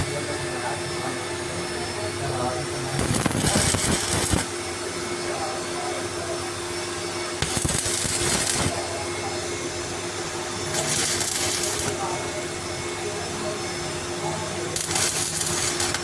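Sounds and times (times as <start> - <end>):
power machine humming: 0.0 - 4.9, 7.2 - 13.2, 14.7 - 16.0
harsh hissing: 3.0 - 4.5, 7.4 - 8.7, 10.7 - 12.2, 14.8 - 16.0.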